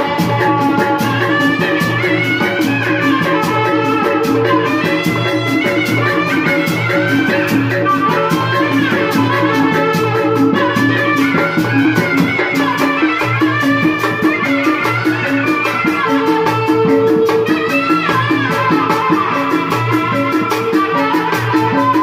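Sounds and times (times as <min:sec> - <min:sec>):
driving percussion beat: 0:00.0 - 0:22.0
wind instruments playing melody: 0:00.0 - 0:22.0.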